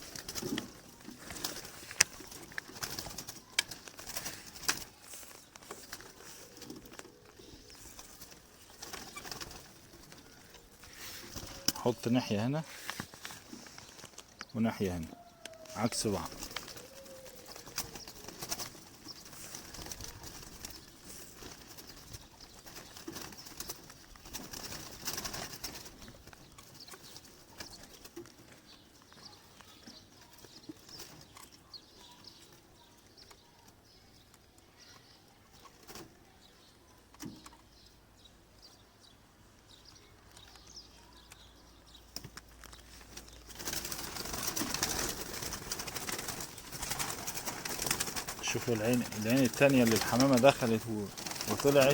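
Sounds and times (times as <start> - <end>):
pigeons cooing: 0.0 - 13.7, 14.6 - 28.1, 43.4 - 51.9
rustles: 0.0 - 51.9.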